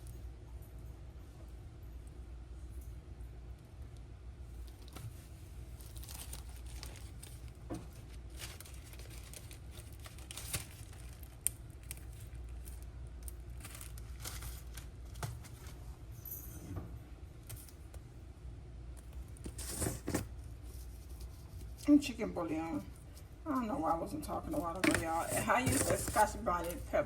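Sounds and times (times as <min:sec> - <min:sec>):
low steady hum: 0:00.0 - 0:27.0
packaging crinkling: 0:05.7 - 0:15.8, 0:19.0 - 0:21.8, 0:24.5 - 0:27.0.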